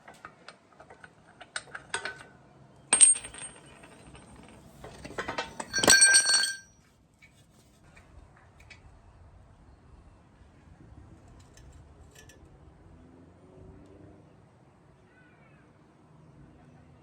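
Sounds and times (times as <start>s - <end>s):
metal pieces clattering: 3.0s - 6.6s.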